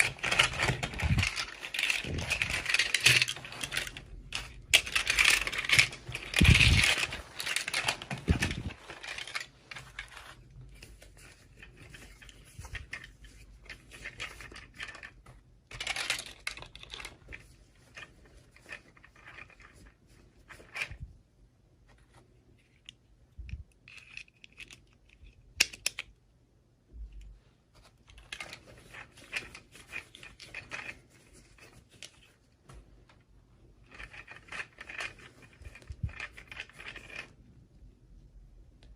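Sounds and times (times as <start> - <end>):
small plastic clicks: 22.7 - 26.2.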